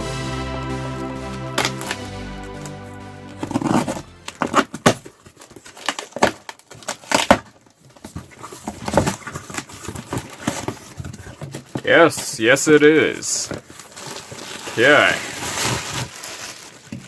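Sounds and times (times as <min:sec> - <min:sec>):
background music: 0:00.0 - 0:05.1
packaging crinkling and rustling: 0:04.8 - 0:12.3, 0:13.5 - 0:17.0.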